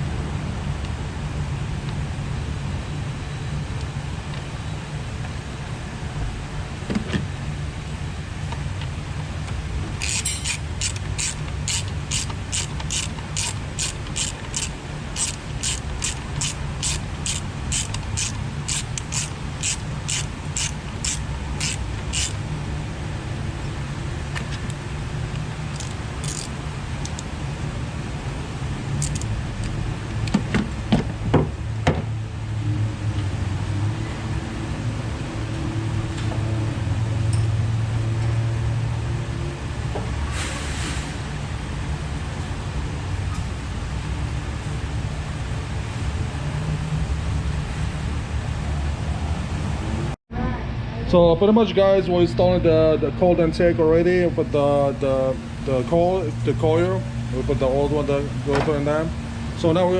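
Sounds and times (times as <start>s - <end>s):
steady low hum: 9.6s - 30.1s
ratchet wrench clicking: 10.0s - 22.4s, 25.7s - 27.3s, 29.0s - 29.3s.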